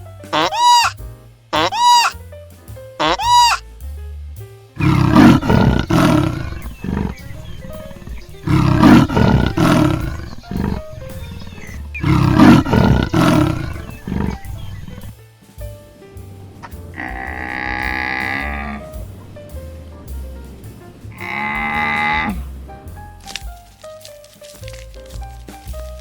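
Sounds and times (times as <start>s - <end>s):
background music: 0.0s - 26.0s
short bleat-like call: 0.4s - 1.0s
big cat roaring: 4.8s - 15.1s, 16.9s - 20.1s, 20.9s - 22.7s.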